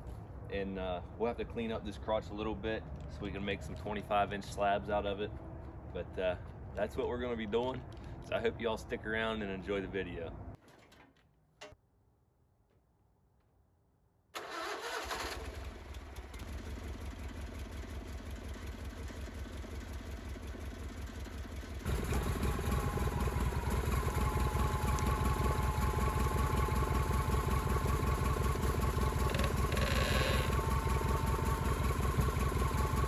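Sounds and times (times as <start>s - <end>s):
engine running: 14.4s - 33.0s.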